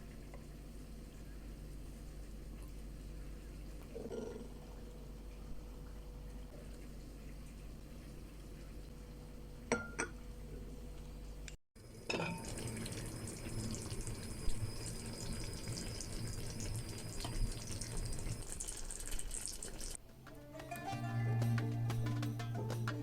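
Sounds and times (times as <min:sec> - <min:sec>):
water running from tap into sink: 0:11.8 - 0:20.0.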